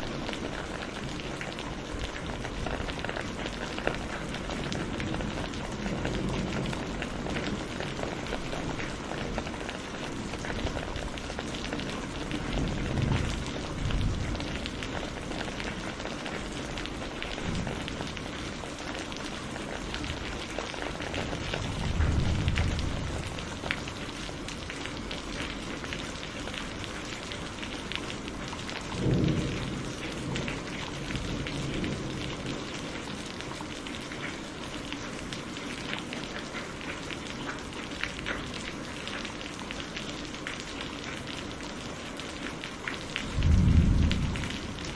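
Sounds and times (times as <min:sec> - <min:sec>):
thunder rumbling: 0:00.0 - 0:25.1, 0:28.8 - 0:33.2, 0:43.2 - 0:44.9
steady rain: 0:00.0 - 0:44.9.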